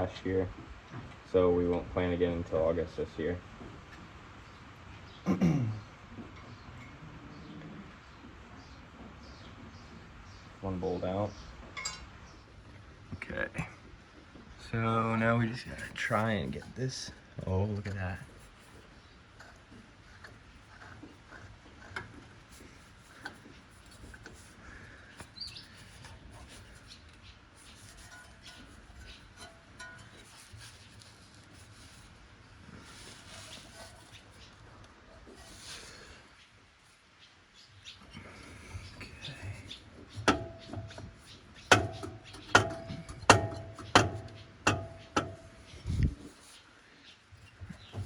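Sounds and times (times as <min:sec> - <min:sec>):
hand tools clicking on metal: 0:40.2 - 0:45.5.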